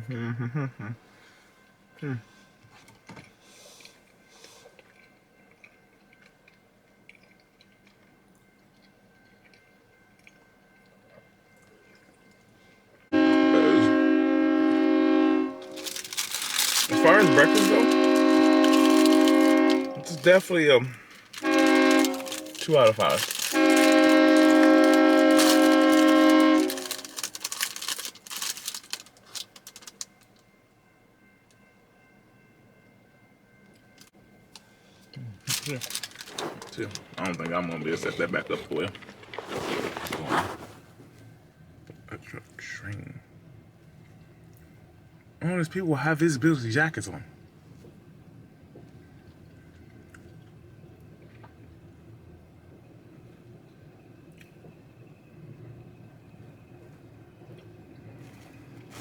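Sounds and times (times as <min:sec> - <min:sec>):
train horn blast: 0:13.1 - 0:27.8, 0:35.4 - 0:40.1
close-up chewing: 0:15.6 - 0:20.1, 0:35.2 - 0:41.1.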